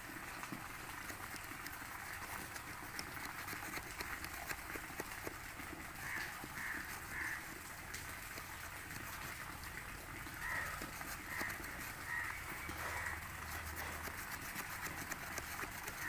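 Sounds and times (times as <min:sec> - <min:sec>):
small saw rasping through wood: 0:00.4 - 0:16.0
bird calls: 0:10.4 - 0:13.3.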